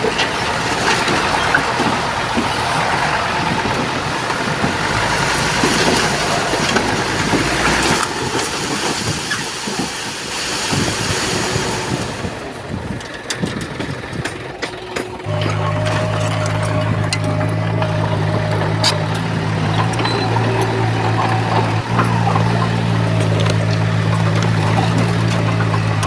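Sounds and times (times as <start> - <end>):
diesel machinery clattering: 0.0 - 26.0
low engine hum: 11.2 - 26.0.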